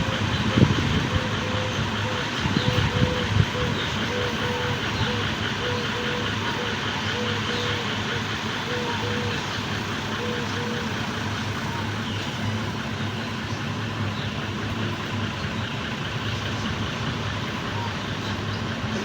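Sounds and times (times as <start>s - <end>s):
steady engine noise: 0.0s - 19.0s.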